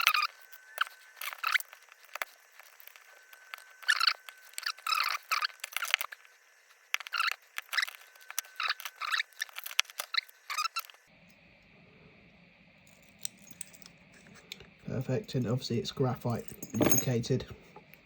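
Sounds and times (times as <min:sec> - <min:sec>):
padlock metallic scrapes and clicks: 0:12.8 - 0:14.6.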